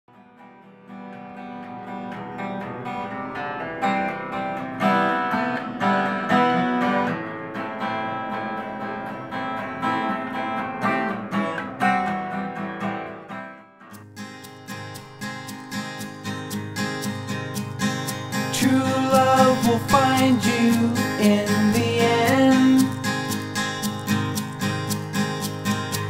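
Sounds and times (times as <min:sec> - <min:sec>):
acoustic guitar strumming: 0:00.1 - 0:26.0.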